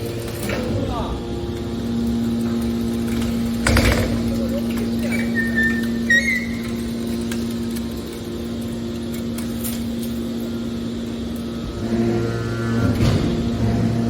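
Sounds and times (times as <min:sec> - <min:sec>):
hydraulic power unit humming: 0:00.0 - 0:14.0
high squeal: 0:05.0 - 0:06.9.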